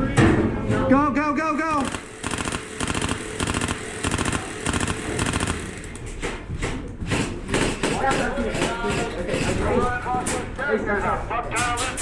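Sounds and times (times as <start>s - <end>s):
airsoft gun full-auto bursts: 1.8s - 6.1s.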